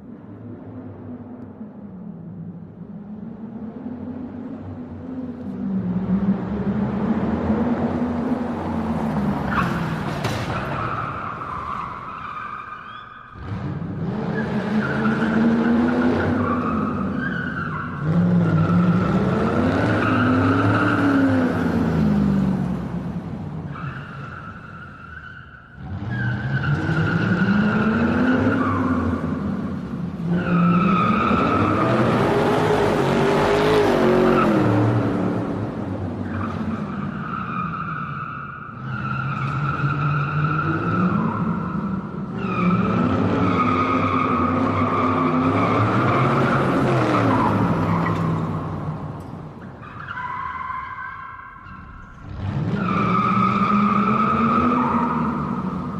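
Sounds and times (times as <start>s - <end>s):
car tyres screeching: 5.4s - 55.9s
car engine revving: 13.3s - 24.4s, 25.8s - 37.8s.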